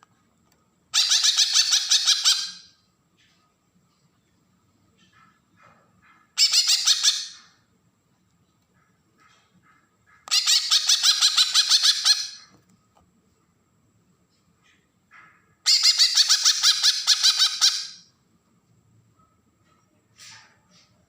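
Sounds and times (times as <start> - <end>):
bird harsh rasping call: 0.9 - 2.8, 6.0 - 7.6, 9.7 - 12.5, 15.1 - 18.1.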